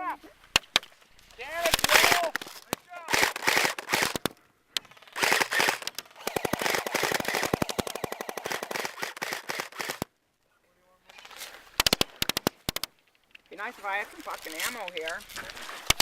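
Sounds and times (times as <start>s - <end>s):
airsoft guns firing bursts: 1.6s - 2.5s, 3.1s - 4.4s, 5.0s - 10.1s, 11.8s - 12.9s.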